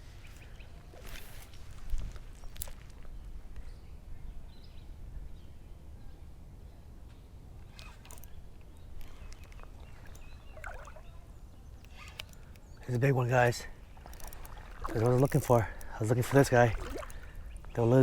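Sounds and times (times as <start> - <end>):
faint clicks: 7.6 - 11.0, 11.8 - 12.8, 14.0 - 16.0.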